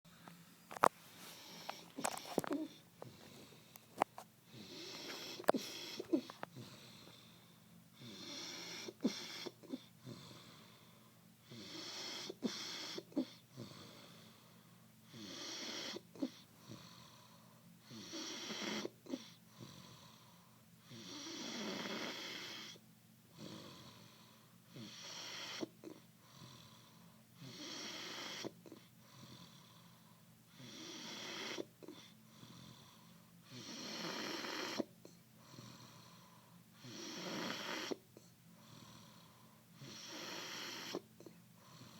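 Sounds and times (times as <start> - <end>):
clicks and snuffles: 0.2 - 4.3, 4.9 - 6.6
hissing snoring breaths: 0.7 - 41.9.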